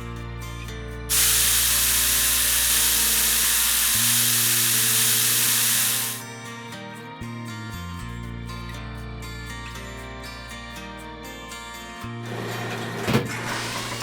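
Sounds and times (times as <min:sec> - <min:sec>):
light background music: 0:00.0 - 0:14.0
loud steady hissing: 0:01.1 - 0:06.3.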